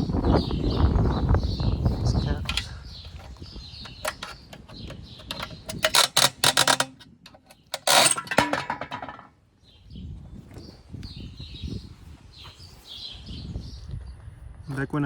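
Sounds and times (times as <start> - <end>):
sharp clicks and knocks: 2.4 - 9.3.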